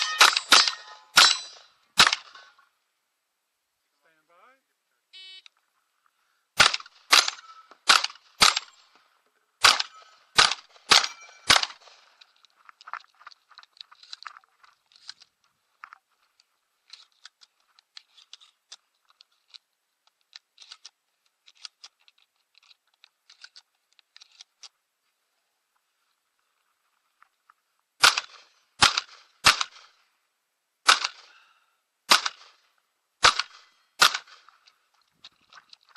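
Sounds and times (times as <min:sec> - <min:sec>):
shotgun shots: 0:00.0 - 0:02.5, 0:06.6 - 0:08.8, 0:09.6 - 0:12.0, 0:28.0 - 0:30.0, 0:30.8 - 0:31.4, 0:32.1 - 0:32.6, 0:33.2 - 0:34.5.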